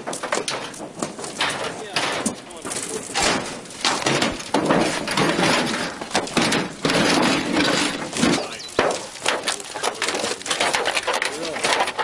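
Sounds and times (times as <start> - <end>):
roofing being torn off: 0.0 - 12.0.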